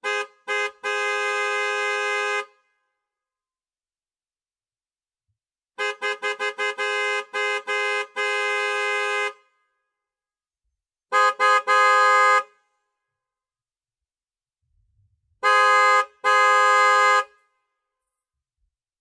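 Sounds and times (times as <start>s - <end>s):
two-note car horn honking: 0.0s - 2.8s, 5.8s - 9.6s, 11.1s - 12.7s, 15.4s - 17.8s.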